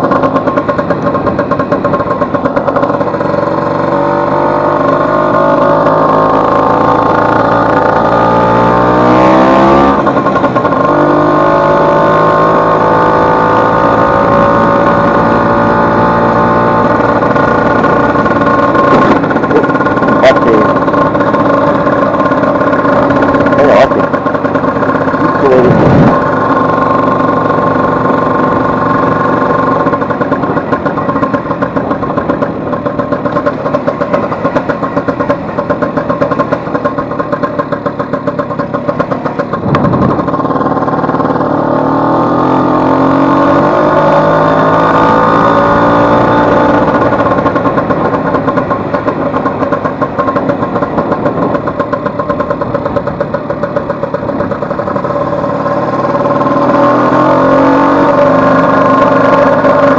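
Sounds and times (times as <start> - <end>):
scooter engine running: 0.0 - 59.9.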